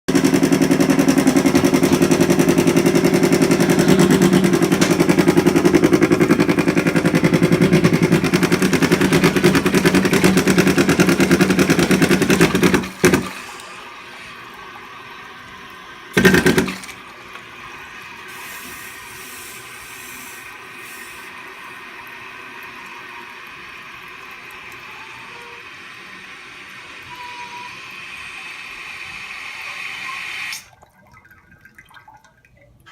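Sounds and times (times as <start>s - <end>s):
toilet tank rattling knock: 0.3s - 13.4s, 16.2s - 17.0s
water hissing into tank: 1.7s - 30.7s
faint high whistle: 27.0s - 30.6s.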